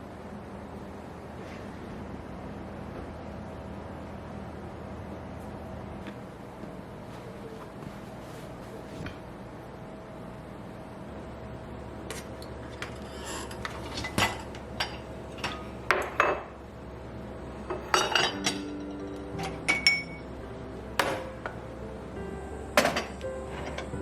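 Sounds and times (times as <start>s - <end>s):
dishes and cutlery clinking: 12.8s - 16.5s, 17.7s - 20.3s, 22.8s - 24.0s.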